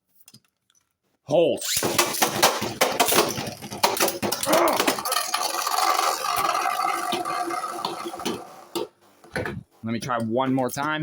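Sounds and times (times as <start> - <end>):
spinning tops clashing clicks: 1.7 - 8.9.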